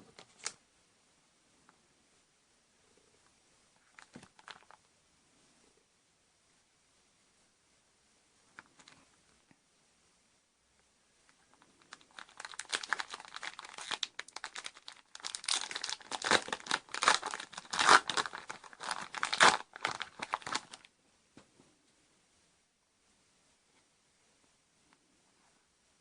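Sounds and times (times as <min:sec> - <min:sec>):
foil wrapper crinkling and tearing: 0:03.8 - 0:04.8, 0:11.9 - 0:20.9.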